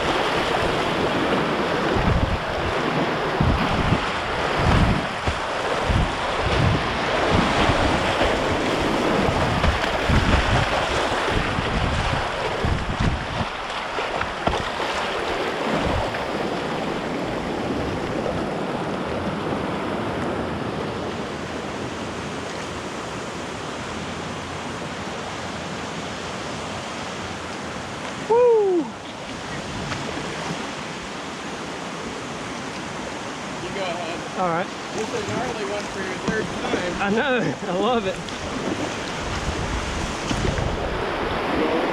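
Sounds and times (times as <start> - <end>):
wind buffeting microphone: 0.0 - 20.9, 34.8 - 41.9
whitewater rapids rushing: 0.0 - 41.9.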